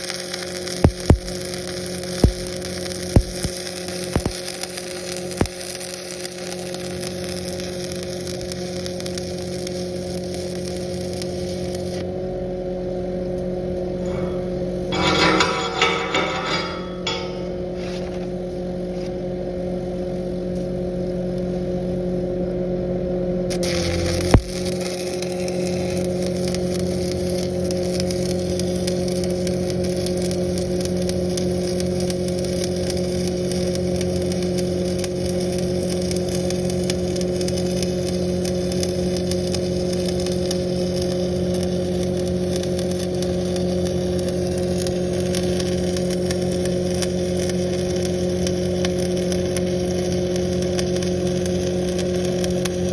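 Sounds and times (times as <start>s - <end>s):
welding arc hiss: 0.0s - 12.1s, 23.5s - 52.9s
welder engine running: 0.0s - 12.5s, 13.3s - 17.8s, 23.5s - 52.9s.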